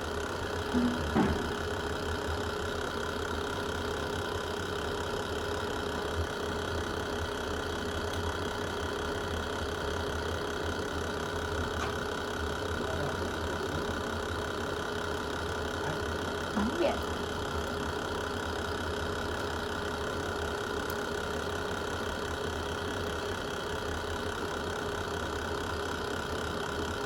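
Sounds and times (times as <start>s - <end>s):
fire burning with low rumble: 1.4s - 27.0s
constant hum: 15.5s - 18.6s.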